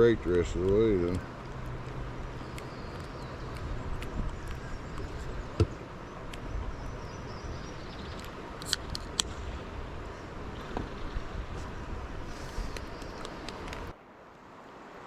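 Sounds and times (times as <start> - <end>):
water and paddling: 0.0 - 15.0
light clicks: 0.2 - 6.5, 12.6 - 13.9.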